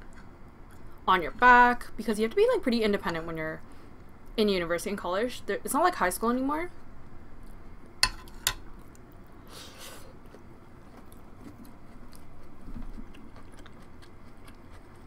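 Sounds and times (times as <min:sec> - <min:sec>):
person chewing: 0:08.8 - 0:15.0.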